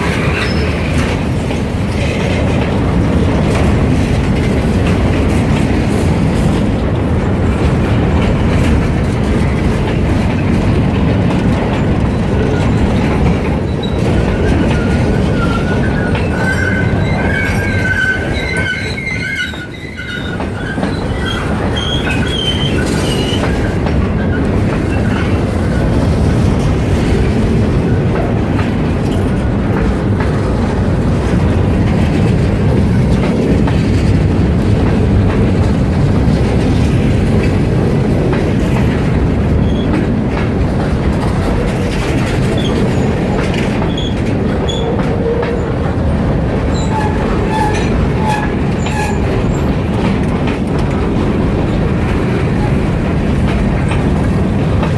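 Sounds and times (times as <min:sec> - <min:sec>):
freight train rumbling on rails: 0:00.0 - 0:54.9
high wheel squeal: 0:13.7 - 0:23.6.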